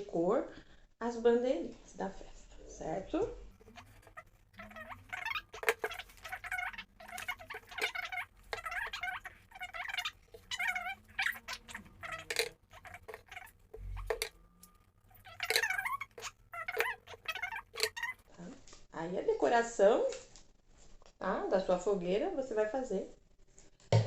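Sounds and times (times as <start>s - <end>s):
high-pitched squeaky voice: 3.5s - 18.3s.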